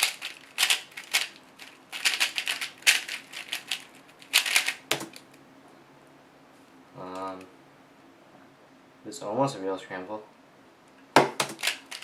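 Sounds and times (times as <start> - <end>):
puzzle cube plastic layers clacking: 0.0 - 5.3, 11.2 - 12.0.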